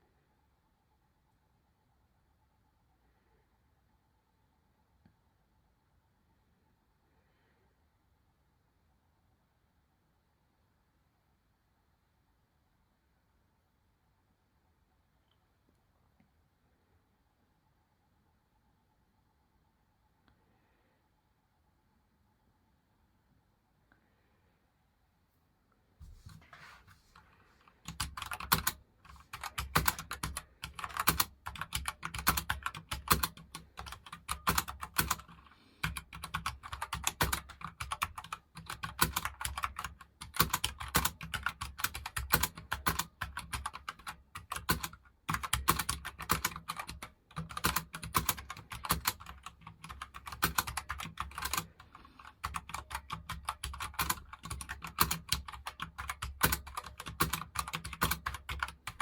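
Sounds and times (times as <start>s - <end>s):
fast keyboard typing: 27.2s - 59.0s.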